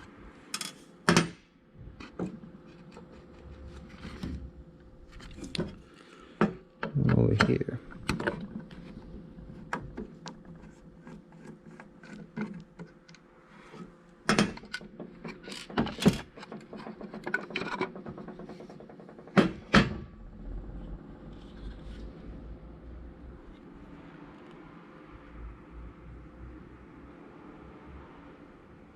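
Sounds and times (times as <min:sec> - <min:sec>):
sharp knocks: 0:14.3 - 0:20.2.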